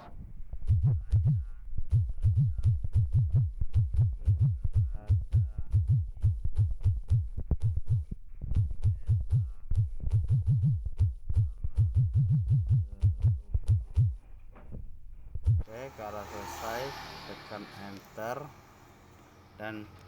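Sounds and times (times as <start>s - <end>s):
background music with deep bass beat: 0.7s - 14.2s.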